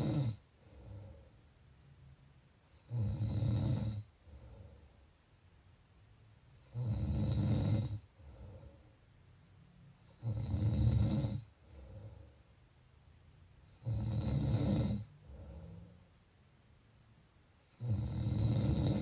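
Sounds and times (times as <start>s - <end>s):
person snoring: 0.0s - 1.2s, 2.8s - 4.7s, 6.6s - 8.7s, 10.1s - 12.3s, 13.7s - 15.9s, 17.7s - 19.0s.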